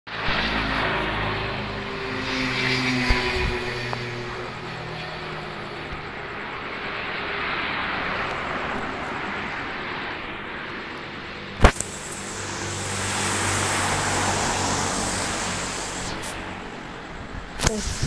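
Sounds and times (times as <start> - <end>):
storm wind gusts: 0.1 - 18.0
sharp bang: 11.6 - 13.6.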